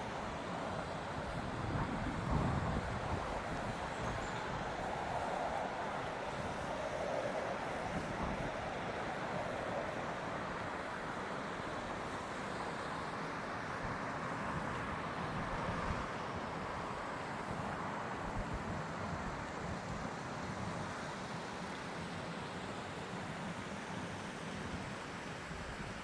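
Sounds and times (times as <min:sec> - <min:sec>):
distant traffic: 0:00.0 - 0:19.6.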